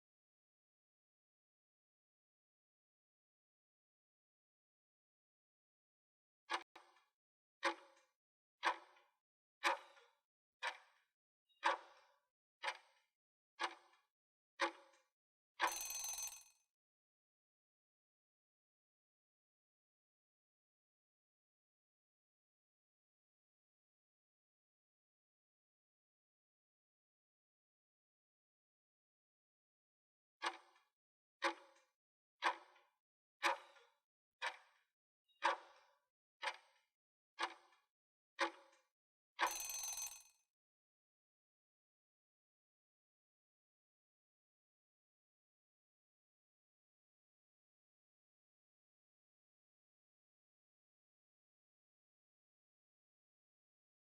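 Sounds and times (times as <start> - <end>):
clock ticking: 39.4 - 40.2.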